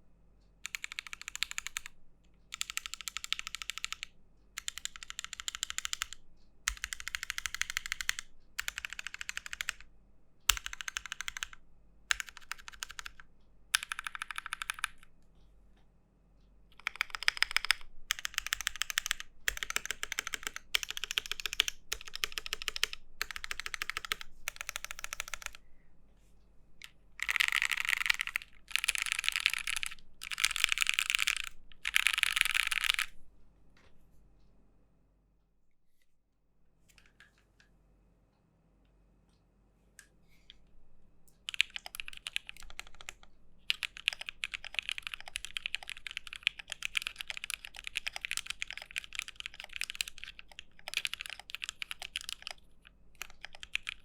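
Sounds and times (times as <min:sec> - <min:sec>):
typing on mechanical keyboard: 0:00.6 - 0:09.9, 0:10.5 - 0:15.1, 0:16.8 - 0:25.6, 0:26.8 - 0:33.2, 0:41.4 - 0:54.0.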